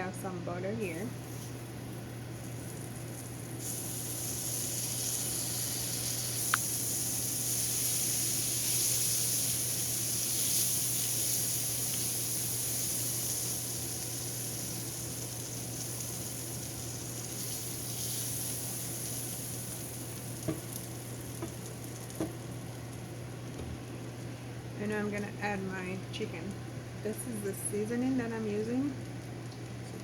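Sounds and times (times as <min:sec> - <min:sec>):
butter sizzling in a pan: 0:01.1 - 0:24.4.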